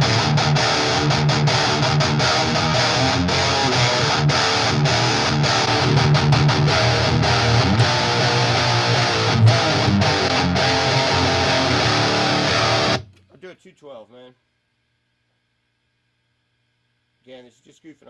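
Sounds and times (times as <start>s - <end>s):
electric guitar riff: 0.0s - 13.1s.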